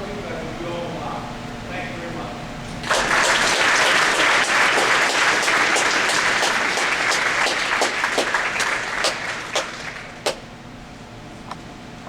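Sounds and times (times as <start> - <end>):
audience applauding: 2.8 - 10.5.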